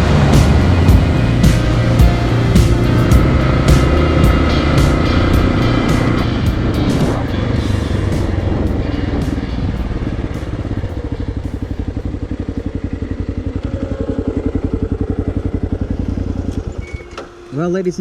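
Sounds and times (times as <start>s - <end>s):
motorcycle engine idling: 0.0s - 18.0s.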